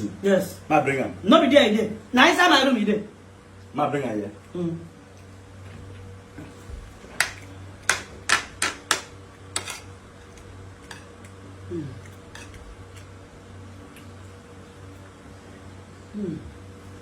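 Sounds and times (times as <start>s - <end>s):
cutlery clinking on dishes: 12.3s - 12.6s.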